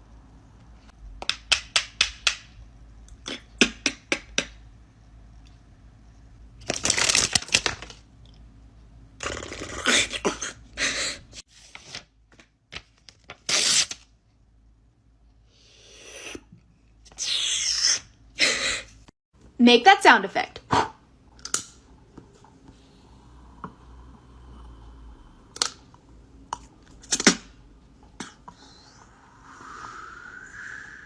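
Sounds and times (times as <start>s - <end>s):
mouth hissing bursts: 15.5s - 16.5s, 28.6s - 31.0s.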